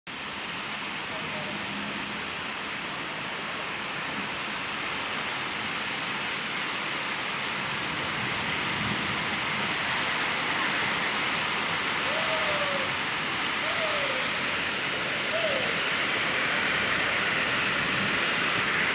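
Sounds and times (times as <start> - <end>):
heavy rain pouring: 0.1 - 18.9.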